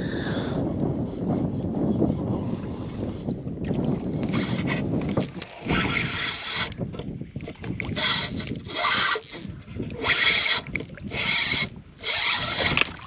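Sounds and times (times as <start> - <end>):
wind on microphone: 0.0 - 13.0.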